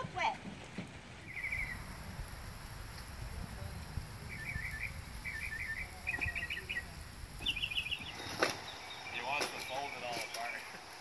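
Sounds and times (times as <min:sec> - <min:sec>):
small bird trilling: 0:01.3 - 0:01.9, 0:04.3 - 0:09.8
low steady rumble: 0:01.3 - 0:09.1.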